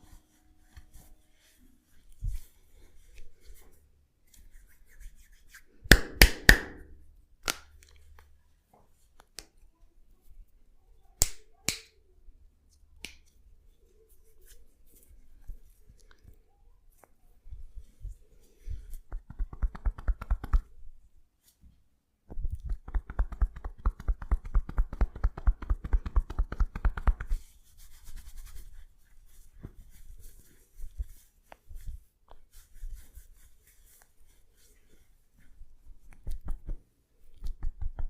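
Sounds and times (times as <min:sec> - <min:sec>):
hands rubbing hair: 0:00.0 - 0:07.0, 0:13.0 - 0:21.7, 0:22.3 - 0:38.0
hands tapping on head: 0:19.0 - 0:20.7, 0:22.5 - 0:27.4, 0:37.4 - 0:38.0
fingers clicking in hair: 0:19.1 - 0:20.7, 0:22.5 - 0:27.4, 0:36.1 - 0:36.8, 0:37.4 - 0:38.0.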